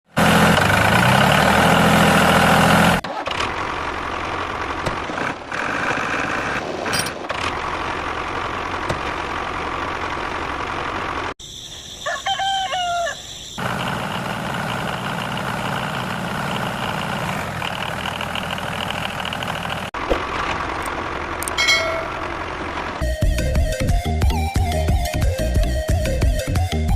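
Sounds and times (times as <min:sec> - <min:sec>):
rooster crowing: 0:11.9 - 0:13.3.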